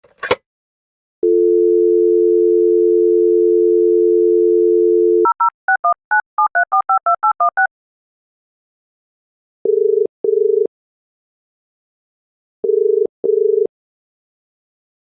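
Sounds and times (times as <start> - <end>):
telephone dial tone: 1.2 - 5.8, 9.7 - 10.7, 12.6 - 13.7
touch-tone dialing beeps: 1.2 - 7.7.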